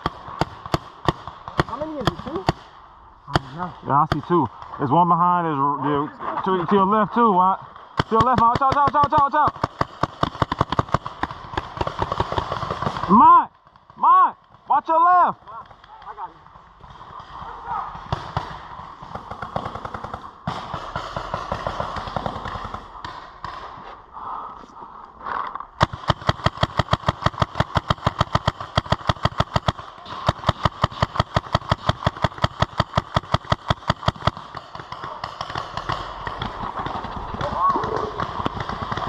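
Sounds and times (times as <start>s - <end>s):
paintball marker firing rapidly: 0.0s - 2.7s, 8.0s - 13.8s, 15.6s - 23.7s, 25.8s - 39.0s
scattered pops and knocks: 8.0s - 14.7s, 25.8s - 39.0s.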